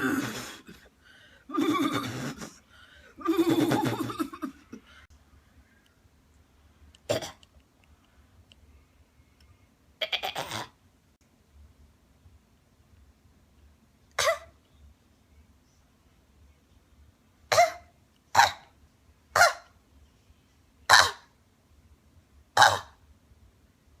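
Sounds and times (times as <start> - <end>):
person coughing: 0.0 - 0.9, 7.1 - 7.4.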